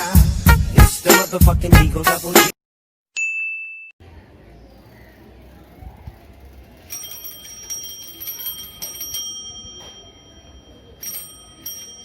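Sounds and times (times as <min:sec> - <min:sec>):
metal bell ringing rapidly: 0:06.9 - 0:12.0.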